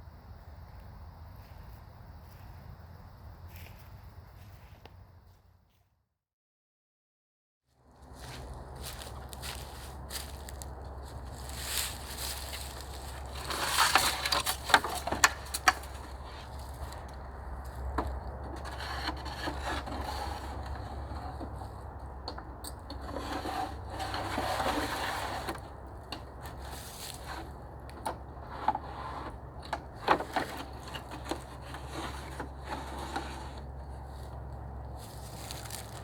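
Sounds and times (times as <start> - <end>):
wooden sticks scraping together: 8.2 - 36.0.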